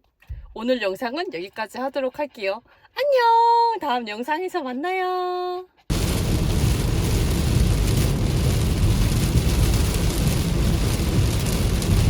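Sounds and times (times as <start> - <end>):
loud rushing noise with rumble: 5.9 - 12.0.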